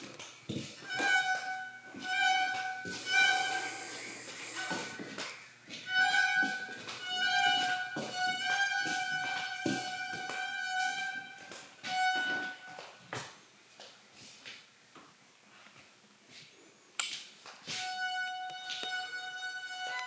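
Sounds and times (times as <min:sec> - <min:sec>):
violin playing high notes: 0:02.1 - 0:05.1, 0:17.8 - 0:20.0.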